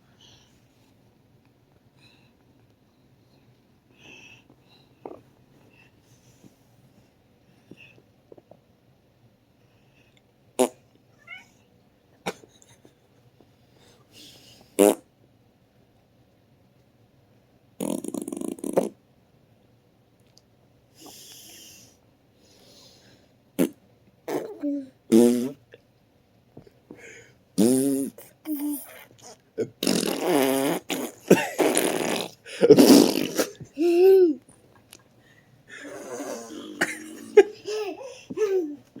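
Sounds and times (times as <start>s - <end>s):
baby breathy buzzy sounds: 30.8s - 34.4s, 35.2s - 39.0s.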